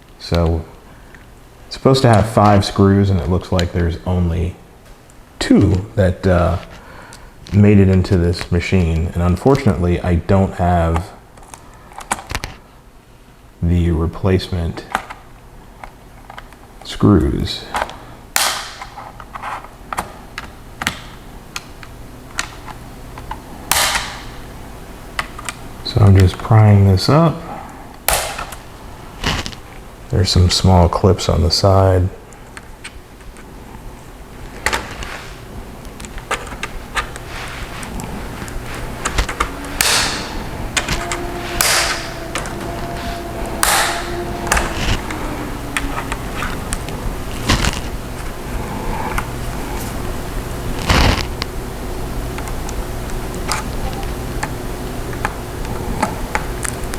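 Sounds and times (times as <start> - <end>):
loud plastic snaps: 17.8 - 21.7, 22.4 - 24.4, 28.1 - 28.6, 43.6 - 44.6.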